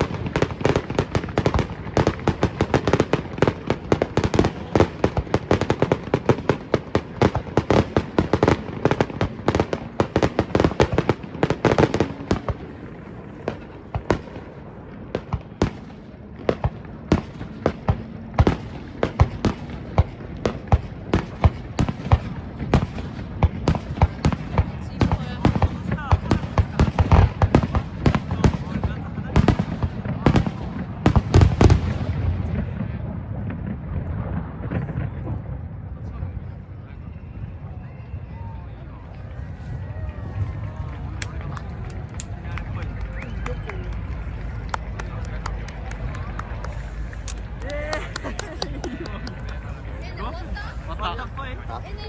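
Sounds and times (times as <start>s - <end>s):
fireworks bangs: 0.0s - 36.8s
fireworks crackle: 0.0s - 37.0s, 38.4s - 52.0s.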